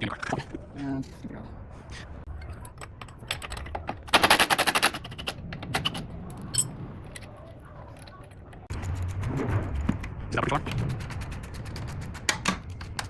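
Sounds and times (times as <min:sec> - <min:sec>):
tools clicking and clanking: 0:02.3 - 0:08.7.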